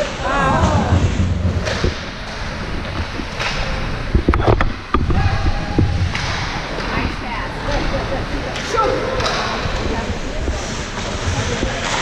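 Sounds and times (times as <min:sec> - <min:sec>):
skate and crowd noise: 0:00.0 - 0:12.0
hockey sticks and puck clacking: 0:01.6 - 0:07.0, 0:08.5 - 0:10.0, 0:10.6 - 0:12.0.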